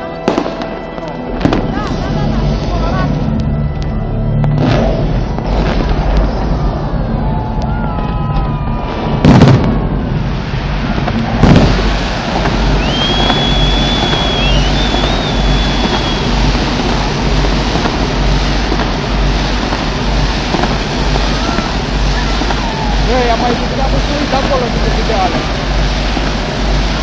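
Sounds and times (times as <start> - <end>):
whistling firework: 0.0 - 3.1, 4.4 - 27.0
din of explosions: 0.0 - 27.0
loud firework bangs: 0.1 - 3.2, 4.4 - 27.0.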